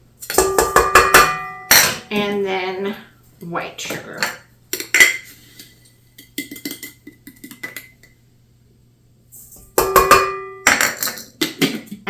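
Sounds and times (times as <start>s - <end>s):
utensils clinking against mixing bowl: 9.5s - 12.0s.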